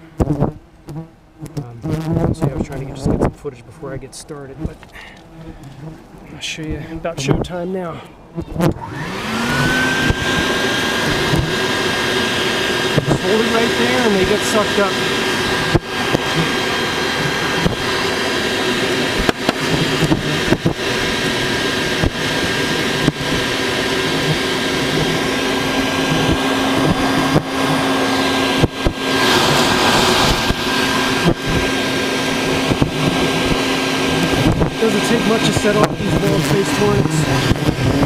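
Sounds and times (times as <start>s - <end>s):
vacuum cleaner whining: 8.4s - 38.0s.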